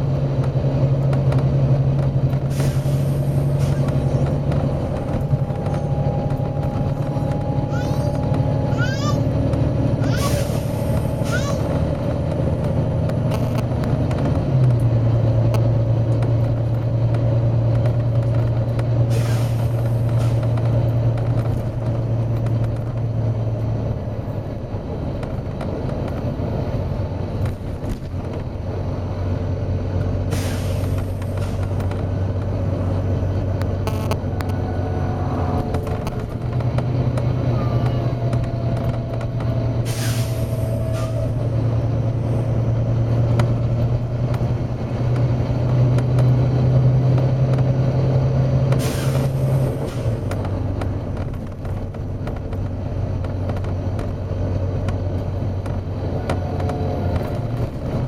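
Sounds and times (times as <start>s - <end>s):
bus diesel engine running: 0.0s - 58.0s
compressed air hiss: 30.4s - 31.6s.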